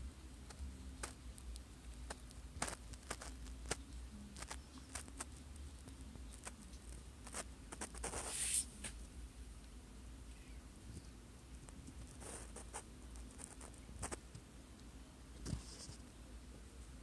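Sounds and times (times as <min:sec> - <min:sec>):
steady low hum: 0:00.0 - 0:17.0
scraping rustle: 0:07.2 - 0:09.0.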